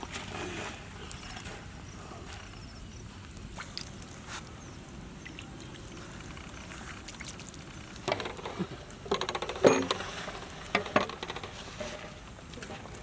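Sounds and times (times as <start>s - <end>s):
metal utensils clattering on pot: 8.1s - 12.2s.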